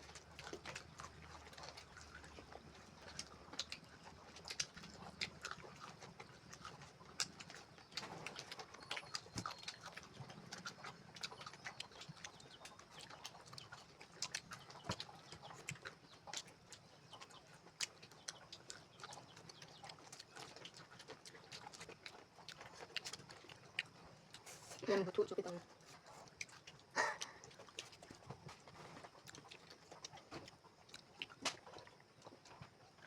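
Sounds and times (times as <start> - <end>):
close chewing: 0.0 - 33.0
lip smacks: 26.0 - 28.4.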